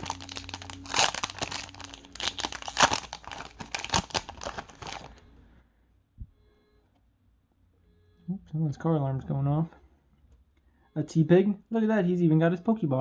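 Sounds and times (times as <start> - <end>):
foil wrapper crinkling and tearing: 0.0 - 5.2.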